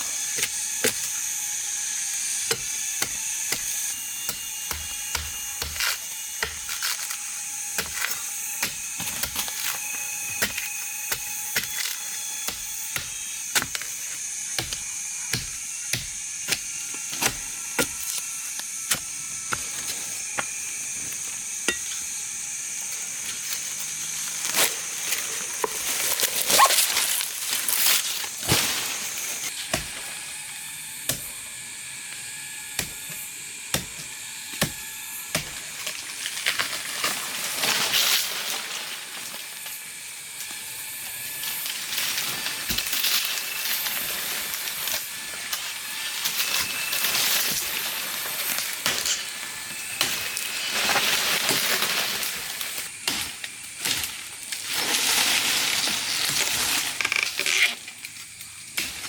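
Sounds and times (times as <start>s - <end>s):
blade chopping stems: 0.0s - 22.1s, 22.9s - 30.2s, 31.1s - 31.4s, 32.8s - 39.4s, 41.5s - 57.3s.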